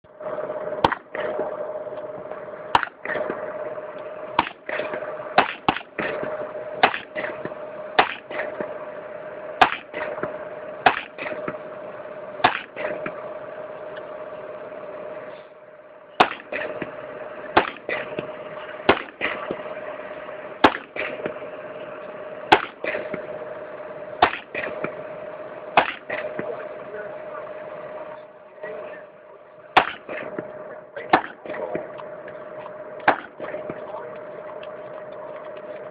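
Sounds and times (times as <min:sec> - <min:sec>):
steady hum: 0:00.0 - 0:35.9
rifle single shots: 0:06.8 - 0:07.3, 0:16.2 - 0:16.9, 0:20.6 - 0:21.2, 0:33.1 - 0:33.8.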